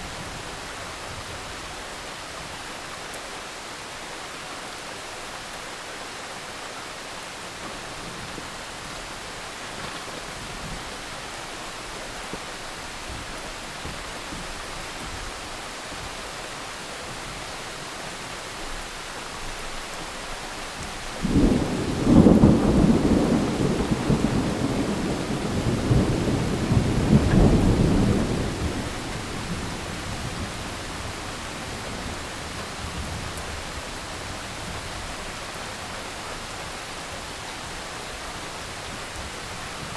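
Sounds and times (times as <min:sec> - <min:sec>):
rain hissing: 0:00.0 - 0:39.9
thunder clap rumbling: 0:21.2 - 0:33.6.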